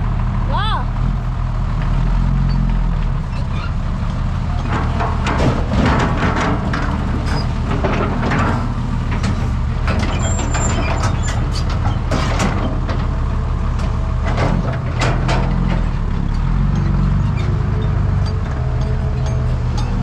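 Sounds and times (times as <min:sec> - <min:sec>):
excavator diesel engine running: 0:00.0 - 0:20.0
metallic clanks and knocks: 0:04.5 - 0:20.0.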